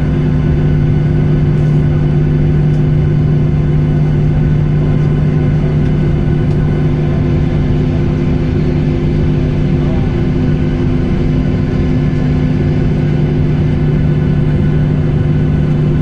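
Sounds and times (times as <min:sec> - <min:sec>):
jet engines droning: 0:00.0 - 0:16.0.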